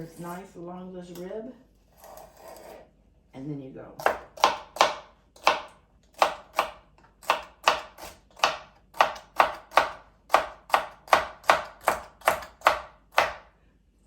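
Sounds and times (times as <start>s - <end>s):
knife chopping celery on board: 4.0s - 13.5s.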